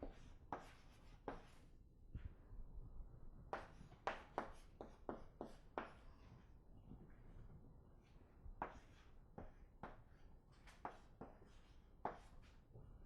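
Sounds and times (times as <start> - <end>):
writing strokes on a board: 0.0 - 1.7, 3.5 - 7.3, 8.0 - 12.8.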